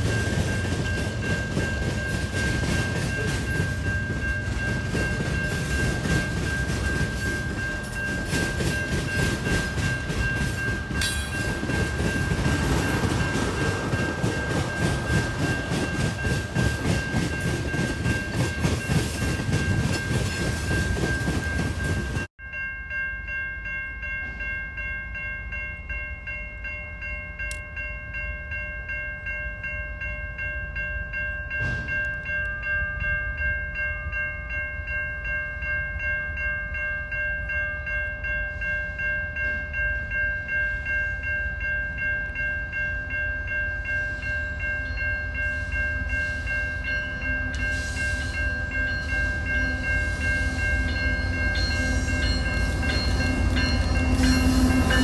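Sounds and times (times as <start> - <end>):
train rumble: 0.0 - 22.3, 38.1 - 55.0
crossing warning bell ringing: 0.0 - 55.0.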